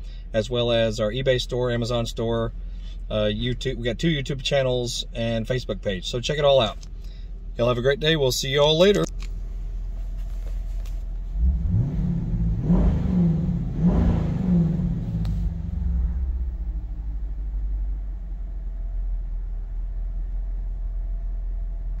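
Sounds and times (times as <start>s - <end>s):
engine idling: 0.0s - 22.0s
engine revving: 11.2s - 17.9s.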